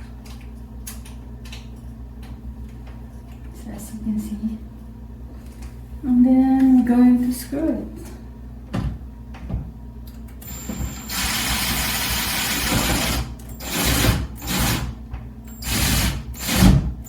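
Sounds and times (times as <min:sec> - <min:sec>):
power drill driving a screw: 0:10.4 - 0:14.9, 0:15.6 - 0:16.8.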